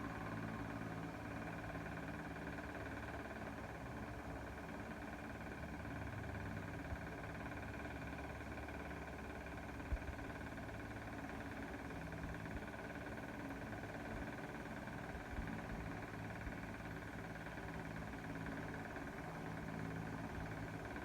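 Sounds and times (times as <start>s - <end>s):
steady mechanical hum: 0.0s - 21.0s.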